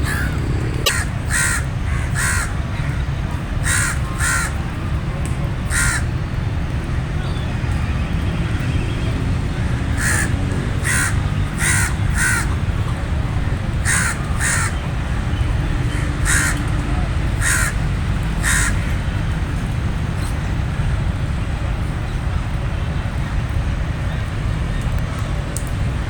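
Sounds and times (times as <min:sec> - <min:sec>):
low rumble: 0:00.0 - 0:01.3
crow cawing: 0:00.0 - 0:02.5, 0:03.6 - 0:04.5, 0:05.7 - 0:06.0, 0:10.0 - 0:12.5, 0:13.8 - 0:14.7, 0:15.9 - 0:16.6, 0:17.4 - 0:17.8, 0:18.4 - 0:18.8.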